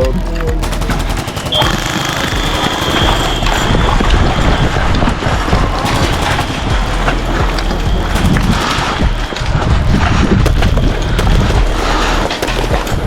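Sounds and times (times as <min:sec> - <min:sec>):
airsoft gunfire bursts: 0:00.6 - 0:04.0, 0:05.6 - 0:09.4.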